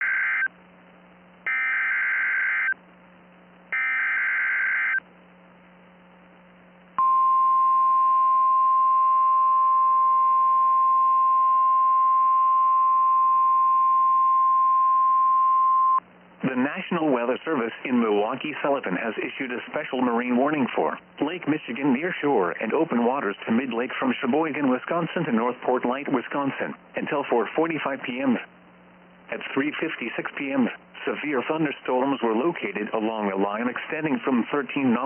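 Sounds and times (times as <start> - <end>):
steady warning alarm tone: 1.5 - 2.8, 3.7 - 5.0.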